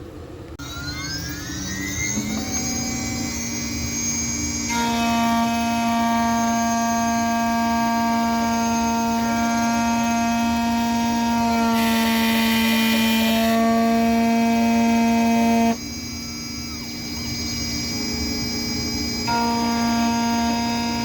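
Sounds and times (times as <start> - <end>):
key cutting machine whine: 0.9 - 21.0
cutter rasping hiss: 1.3 - 21.0.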